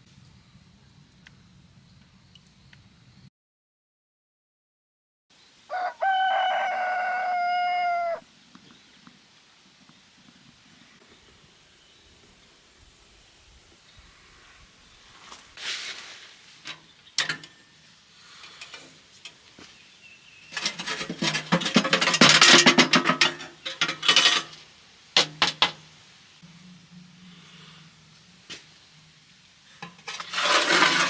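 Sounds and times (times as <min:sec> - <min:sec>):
metal utensils clattering: 0:16.7 - 0:17.6, 0:20.5 - 0:24.6, 0:29.8 - 0:31.0.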